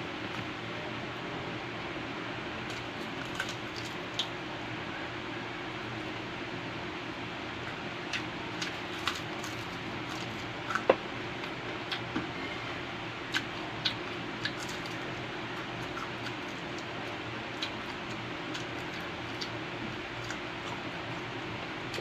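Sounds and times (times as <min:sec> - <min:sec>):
chewing smacks: 0:13.3 - 0:15.0.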